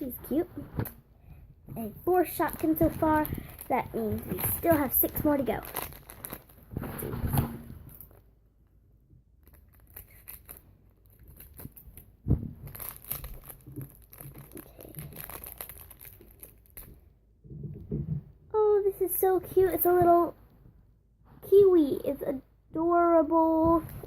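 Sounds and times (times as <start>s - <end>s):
plastic bag crinkling: 1.8s - 8.2s, 9.4s - 17.0s.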